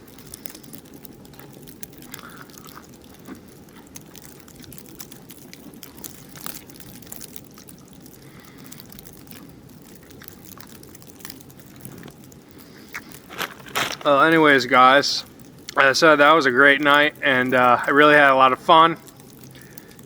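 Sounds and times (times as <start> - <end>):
packaging crinkling: 0.0 - 15.8
low background noise: 0.0 - 20.0.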